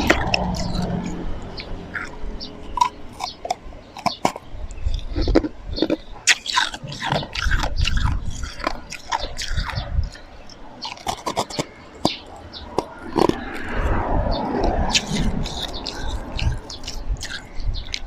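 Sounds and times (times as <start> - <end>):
chewing crunchy ice: 0.0 - 13.8, 14.6 - 18.0.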